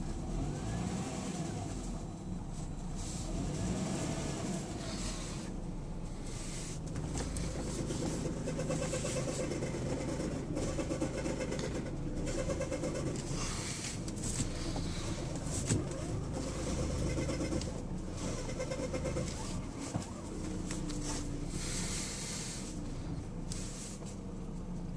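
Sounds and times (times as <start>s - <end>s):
car engine running: 0.0s - 24.9s
squealing engine noise: 6.2s - 23.2s.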